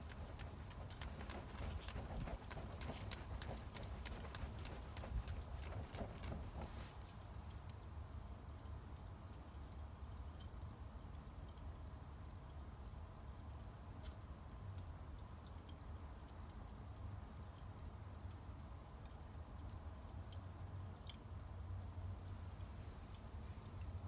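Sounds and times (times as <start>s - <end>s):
charcoal fire crackling: 0.0s - 8.2s.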